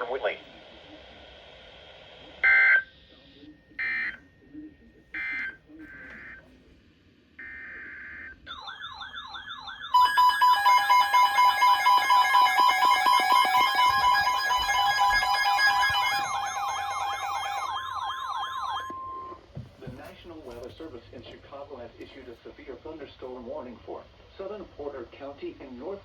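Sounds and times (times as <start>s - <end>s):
yelping siren sweep: 9.4s - 19.4s.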